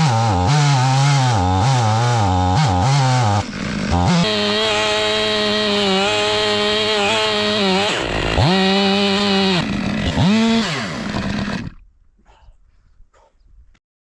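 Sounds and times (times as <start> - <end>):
chainsaw revving: 0.0 - 11.8.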